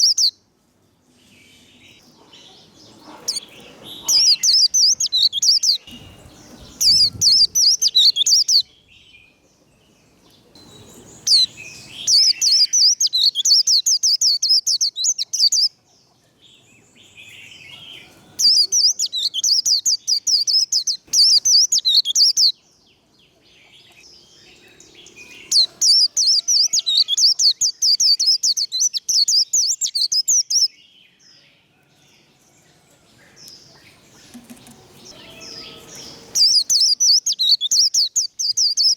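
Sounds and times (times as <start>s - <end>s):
white-eye bird warbling song: 0.0s - 0.4s, 1.5s - 8.7s, 10.3s - 15.8s, 17.2s - 22.6s, 23.3s - 30.8s, 33.4s - 38.9s.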